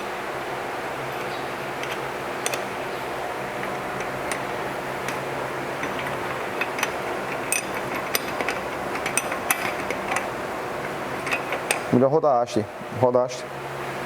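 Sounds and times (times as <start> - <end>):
fan hum: 0.0 - 14.0
wrench clicking on metal: 5.8 - 11.9.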